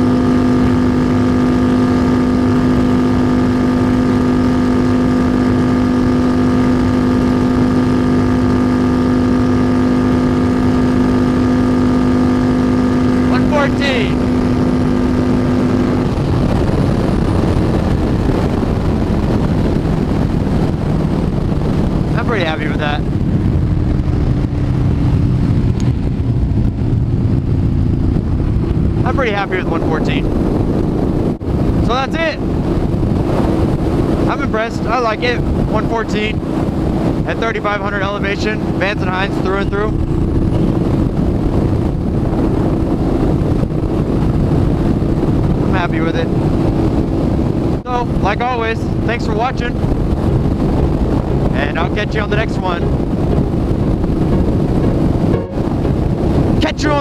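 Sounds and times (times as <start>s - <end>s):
motorcycle engine at full throttle: 0.0s - 57.0s
wind rushing over microphone: 0.0s - 57.0s.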